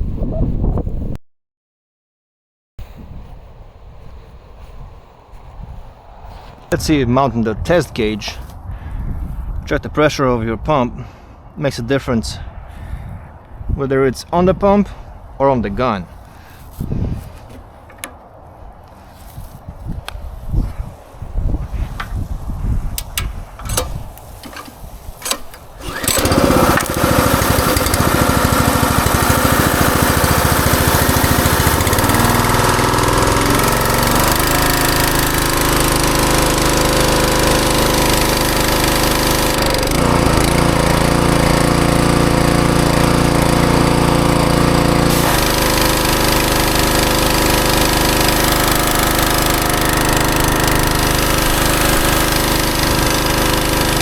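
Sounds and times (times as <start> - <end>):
clicks and knocks: 17.5 - 18.2, 22.0 - 22.2, 23.0 - 27.0
pressure washer engine running: 21.8 - 22.4, 23.0 - 54.0.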